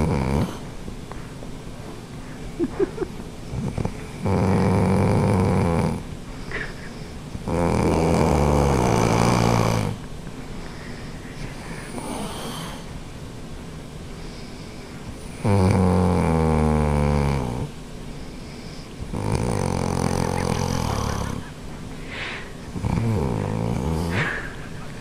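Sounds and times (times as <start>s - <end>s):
woman snoring: 0.0s - 0.6s, 3.7s - 6.7s, 7.5s - 10.0s, 11.8s - 12.9s, 15.4s - 17.7s, 19.1s - 21.5s, 22.2s - 24.5s
quiet breath: 6.3s - 7.3s, 10.4s - 12.9s, 14.1s - 15.2s, 21.2s - 22.7s.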